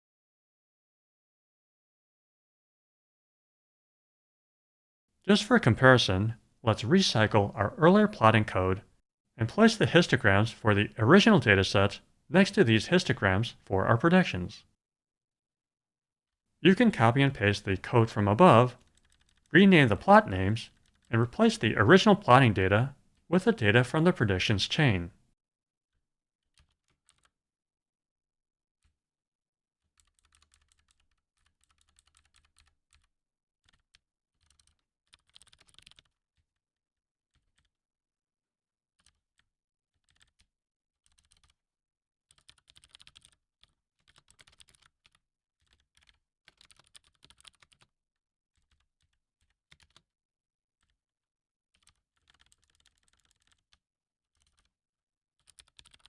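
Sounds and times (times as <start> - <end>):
typing on computer keyboard: 30.0 - 36.2, 40.0 - 41.6, 42.3 - 47.9, 48.6 - 50.0, 51.8 - 53.8, 54.4 - 54.7, 55.4 - 56.0.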